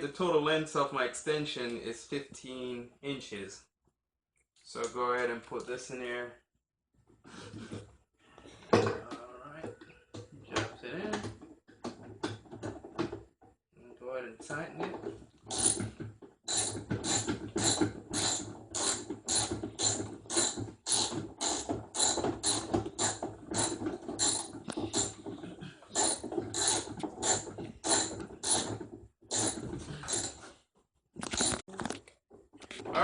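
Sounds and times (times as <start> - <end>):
ratchet wrench clicking: 15.5 - 15.8, 16.5 - 25.2, 26.0 - 28.7.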